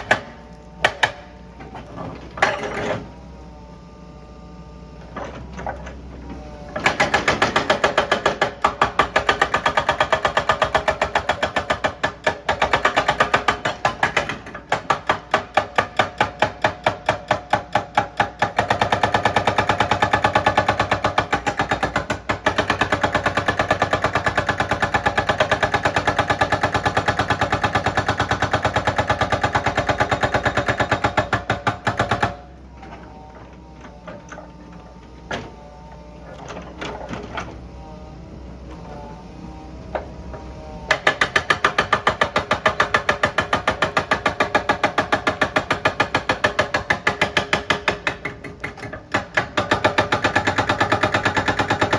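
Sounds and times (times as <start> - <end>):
excavator hammering: 0.0 - 1.3, 6.8 - 32.6, 40.9 - 51.9.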